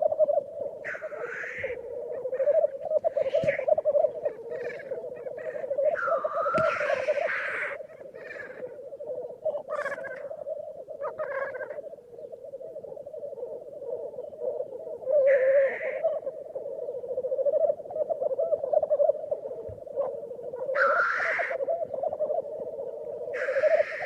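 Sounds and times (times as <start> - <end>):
grouse bubbling warble: 0.0 - 24.0
harsh high bird calls: 0.8 - 8.7.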